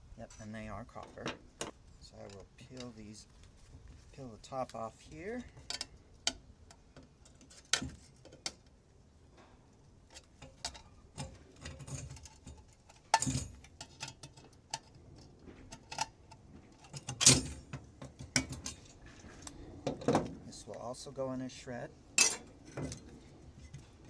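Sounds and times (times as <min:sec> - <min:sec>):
parts clattering: 0:00.9 - 0:03.6, 0:10.0 - 0:20.4, 0:22.1 - 0:24.0.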